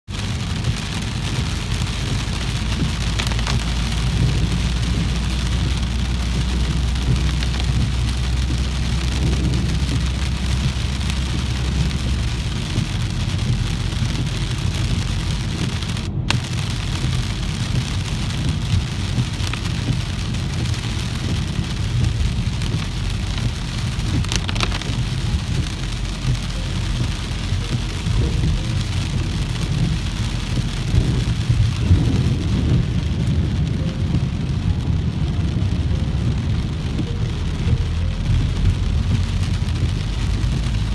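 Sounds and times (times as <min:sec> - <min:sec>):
low rumble: 0:00.0 - 0:40.9
heavy rain falling: 0:00.1 - 0:40.9.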